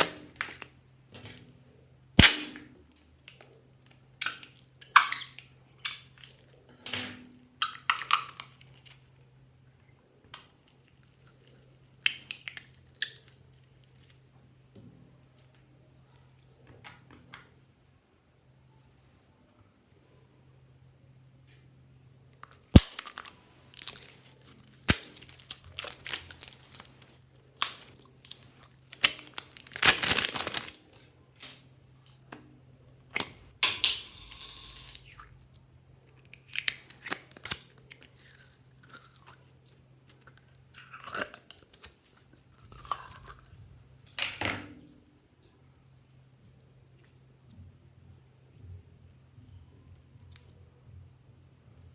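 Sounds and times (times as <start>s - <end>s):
slime squishing and crackling: 22.6s - 30.9s.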